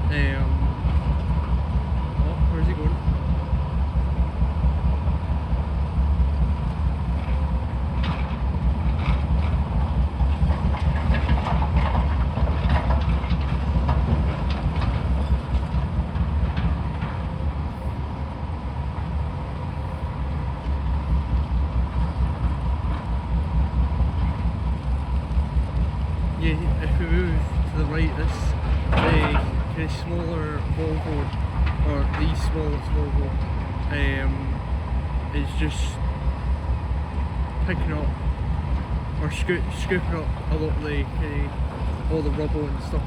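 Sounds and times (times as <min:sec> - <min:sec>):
excavator engines rumbling: 0:00.0 - 0:43.0
clanks of metal and rubble: 0:10.3 - 0:17.2, 0:28.2 - 0:30.0.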